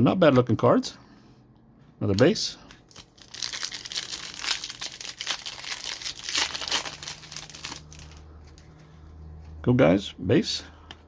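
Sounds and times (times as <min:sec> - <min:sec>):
foil wrapper crinkling: 0:02.9 - 0:08.2.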